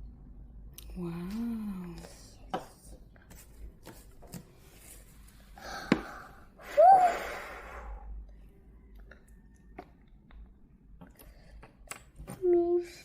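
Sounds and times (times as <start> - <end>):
person sighing: 5.6 - 8.1.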